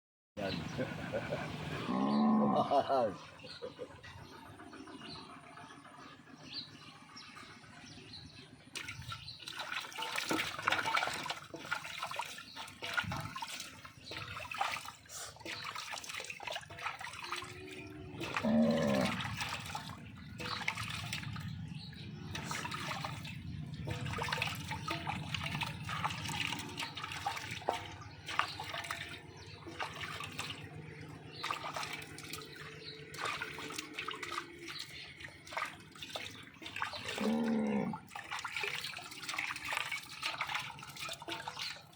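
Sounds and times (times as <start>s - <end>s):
water running and splashing: 8.7s - 41.9s.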